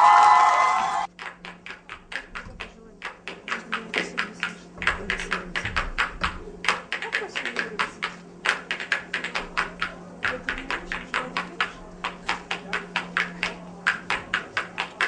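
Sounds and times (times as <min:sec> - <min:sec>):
people clapping: 0:00.0 - 0:02.7
low electrical hum: 0:00.0 - 0:15.0.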